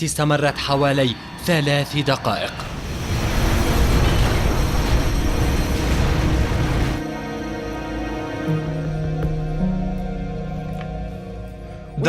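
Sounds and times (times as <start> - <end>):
loud rushing noise: 0.4 - 7.0
low dark sustained music tones: 3.5 - 12.0.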